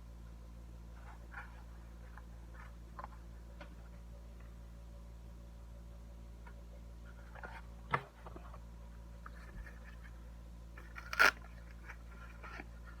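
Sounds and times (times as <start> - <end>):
packaging rustling and scraping: 10.8 - 13.0.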